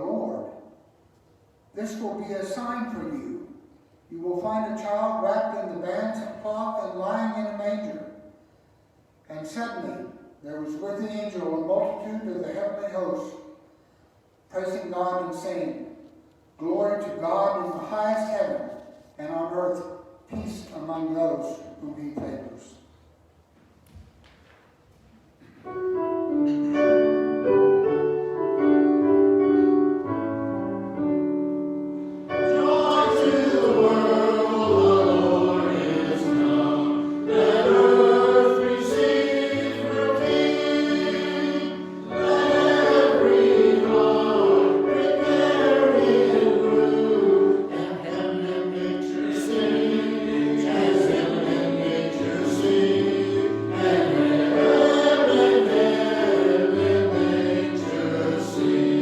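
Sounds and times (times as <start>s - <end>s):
choir singing with instruments: 32.0s - 59.0s.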